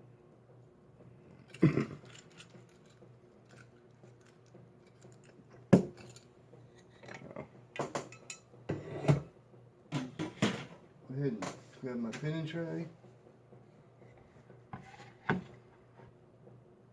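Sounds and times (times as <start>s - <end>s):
sharp clicks and clatters: 1.4s - 8.4s
metal parts clinking: 1.5s - 7.3s.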